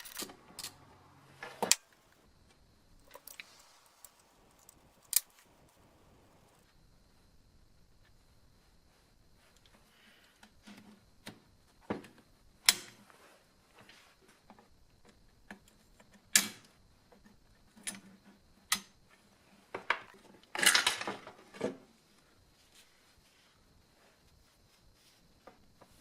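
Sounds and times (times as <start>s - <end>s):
metal tools clinking and knocking: 20.5s - 21.4s.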